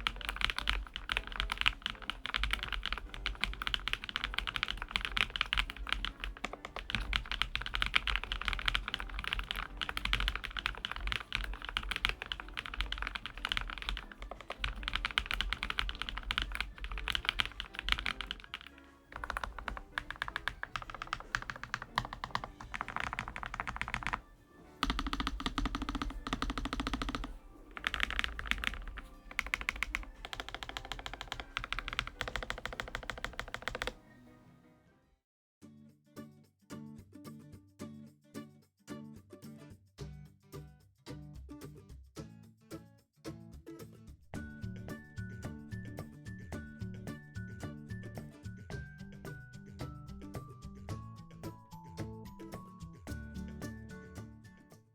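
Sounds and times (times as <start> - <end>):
mechanical keyboard typing: 0.0 - 34.0
background music: 0.0 - 35.2, 43.4 - 54.9.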